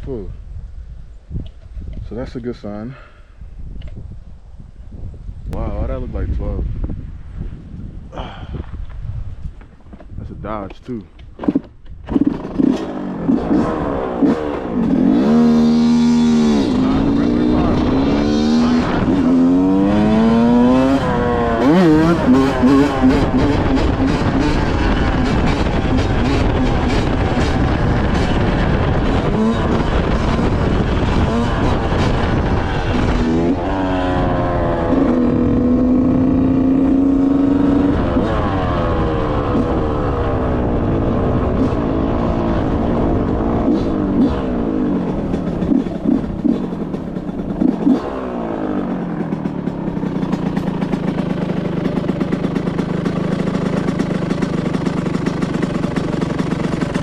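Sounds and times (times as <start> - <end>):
two-stroke motorcycle engine revving: 11.4 - 57.0.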